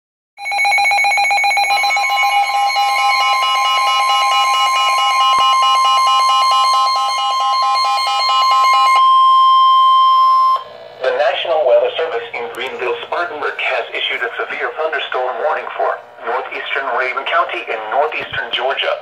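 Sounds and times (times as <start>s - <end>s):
fast-pulsing electronic alarm: 0.4s - 13.0s
steady warning tone: 0.4s - 19.0s.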